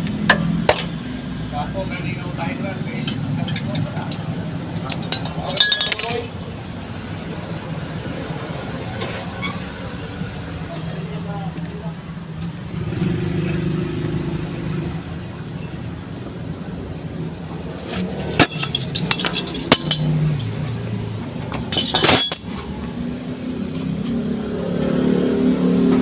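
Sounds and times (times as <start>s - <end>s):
steady engine hum: 0.0s - 26.0s
sharp metallic clinks: 18.4s - 23.2s.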